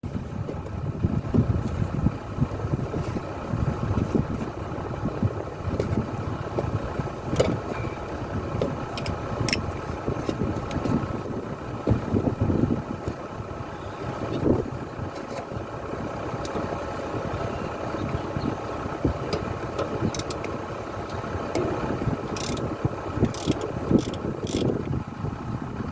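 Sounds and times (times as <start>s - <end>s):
excavator diesel engine idling: 0.1s - 25.9s
sharp metallic clicks: 8.6s - 9.7s, 19.3s - 24.7s.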